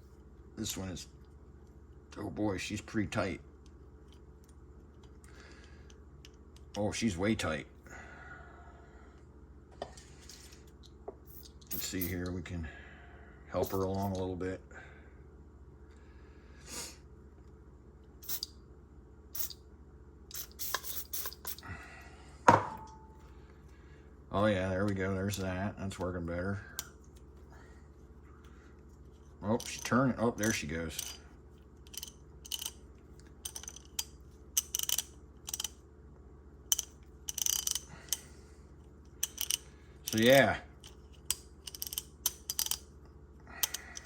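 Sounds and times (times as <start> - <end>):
ratchet clicking: 31.9 - 32.8, 33.4 - 35.8, 36.7 - 38.2, 39.2 - 42.8.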